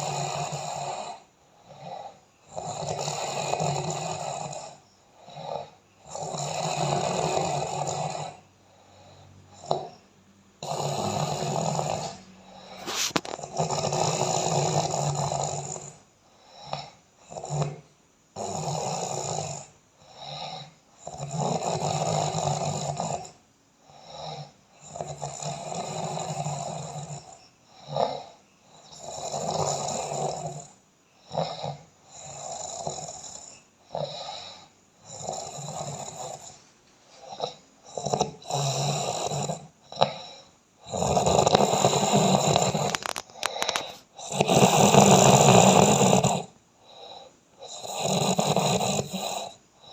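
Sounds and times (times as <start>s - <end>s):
person snoring loudly: 0.0s - 8.4s, 10.6s - 16.0s, 16.7s - 36.6s, 37.2s - 49.9s
short sharp snorts: 10.6s - 14.0s.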